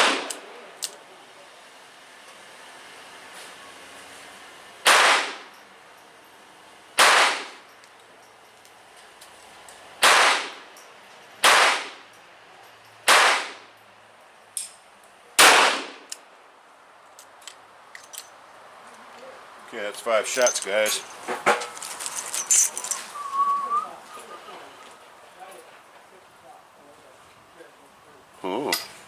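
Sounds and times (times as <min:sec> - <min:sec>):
handgun shots: 0:00.0 - 0:00.4, 0:04.9 - 0:05.5, 0:07.0 - 0:07.6, 0:10.0 - 0:10.6, 0:11.4 - 0:12.0, 0:13.1 - 0:13.6, 0:15.4 - 0:16.2.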